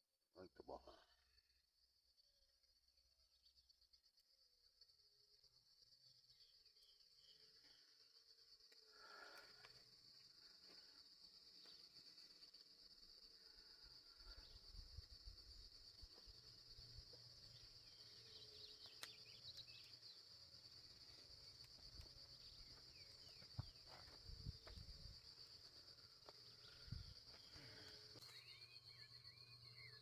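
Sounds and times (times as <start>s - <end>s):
insects trilling: 0.5s - 30.0s
faint bird chirps: 5.9s - 8.2s, 13.2s - 25.1s, 25.8s - 30.0s.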